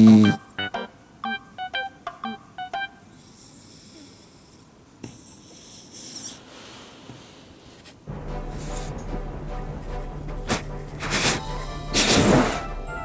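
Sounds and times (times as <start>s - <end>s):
background music: 0.0s - 3.1s, 8.1s - 13.0s
dog snorting breaths: 3.3s - 12.8s.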